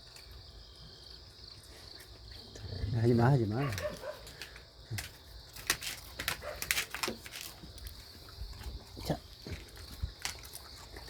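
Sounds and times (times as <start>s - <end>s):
insects chirring: 0.0s - 11.0s.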